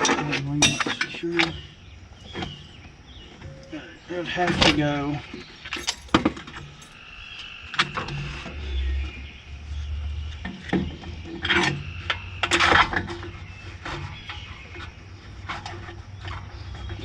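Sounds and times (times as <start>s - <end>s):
parts knocking and scraping: 0.6s - 1.3s, 5.7s - 7.1s.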